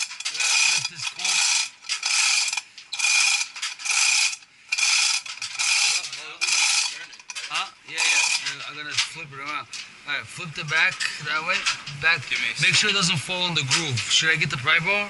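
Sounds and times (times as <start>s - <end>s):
hand ratchet clicking: 0.0s - 8.6s.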